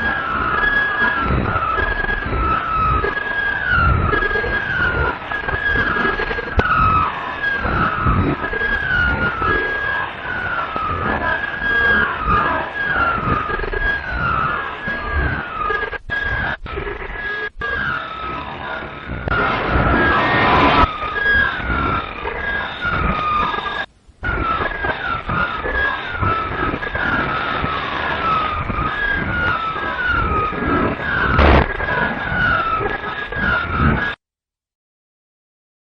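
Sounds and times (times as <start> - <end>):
siren-like descending tone: 0.0 - 34.2
noisy rumbling bed: 28.2 - 32.6.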